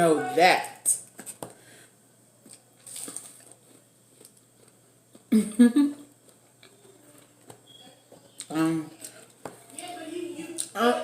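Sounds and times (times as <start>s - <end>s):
person chewing: 2.4s - 9.4s.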